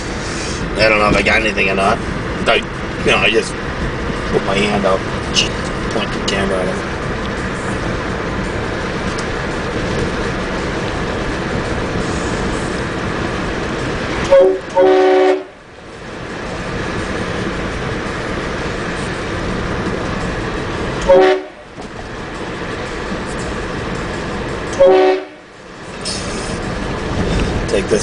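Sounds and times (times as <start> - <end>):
steady background noise: 0.0 - 28.0
train horn blasts: 14.2 - 15.6, 21.0 - 21.7, 24.7 - 25.5.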